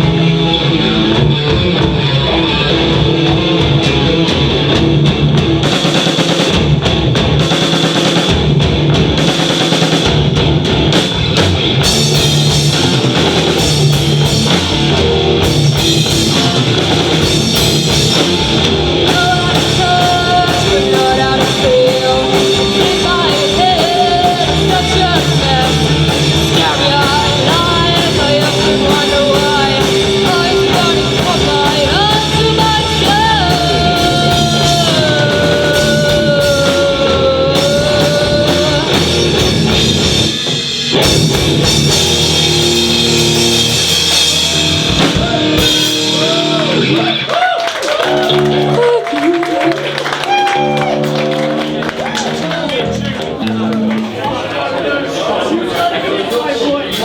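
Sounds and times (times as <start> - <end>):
live rock band playing: 0.0 - 57.0
person singing: 19.0 - 39.8.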